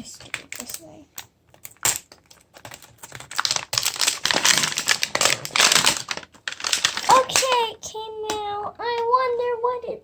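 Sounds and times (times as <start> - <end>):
plastic packaging crinkling and tearing: 1.6 - 7.8.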